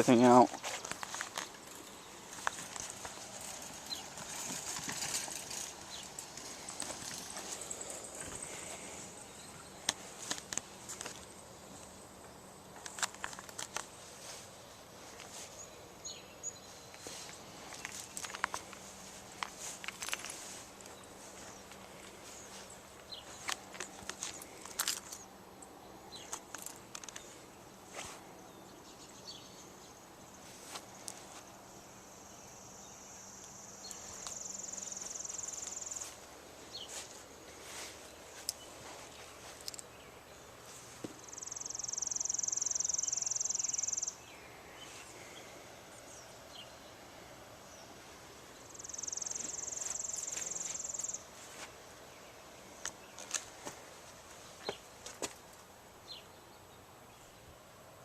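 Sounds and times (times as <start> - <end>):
small clicks and knocks: 26.2 - 27.3.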